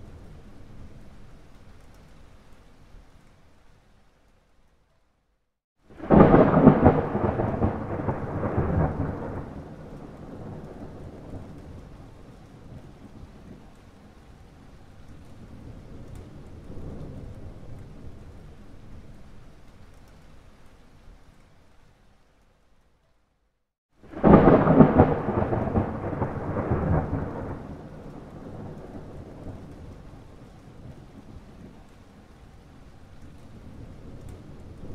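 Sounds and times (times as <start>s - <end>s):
thunder clap rolling: 5.9s - 12.2s, 24.0s - 31.8s.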